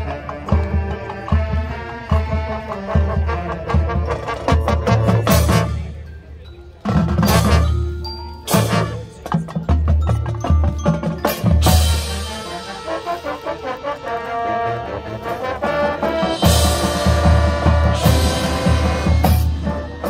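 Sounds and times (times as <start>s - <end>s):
marching band playing: 0.0s - 20.0s
ringing mallet percussion: 4.0s - 12.4s.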